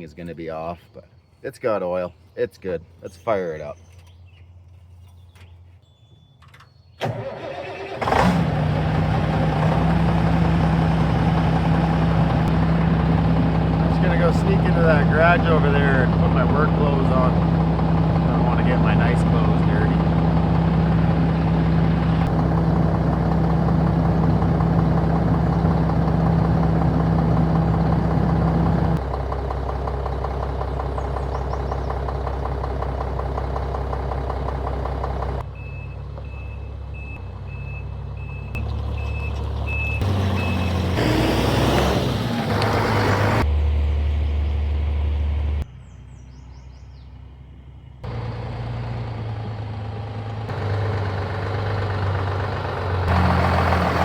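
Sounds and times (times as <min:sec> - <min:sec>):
heavy diesel engine running: 0:07.1 - 0:46.2, 0:47.3 - 0:54.0
reversing alarm beeping: 0:35.5 - 0:40.8.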